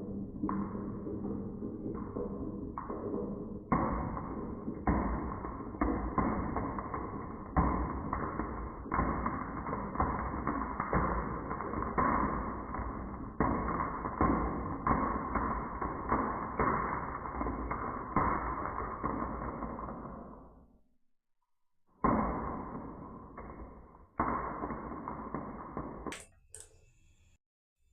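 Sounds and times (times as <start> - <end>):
marbles clacking: 0.0 - 12.7
marbles rolling on wooden track: 0.0 - 20.4.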